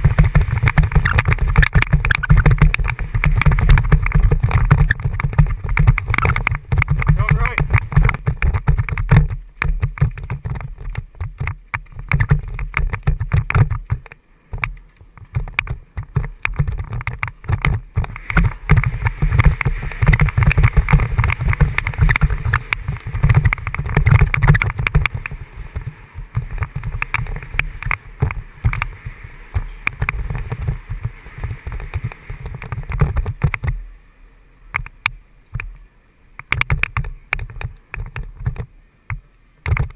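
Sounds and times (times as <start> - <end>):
bike clattering and rattling: 0.0 - 33.8, 36.4 - 39.9
bike tyres rumbling over rough ground: 0.0 - 35.8, 36.4 - 39.9.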